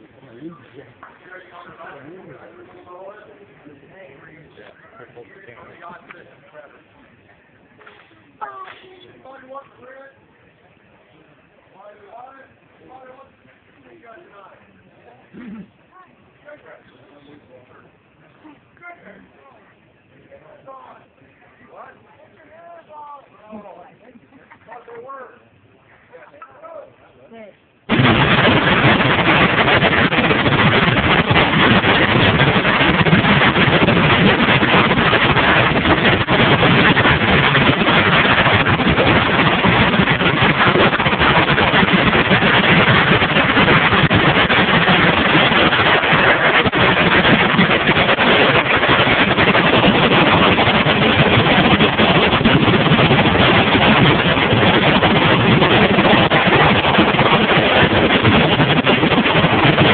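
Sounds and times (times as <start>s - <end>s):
machine guns firing full-auto: 27.9s - 59.9s.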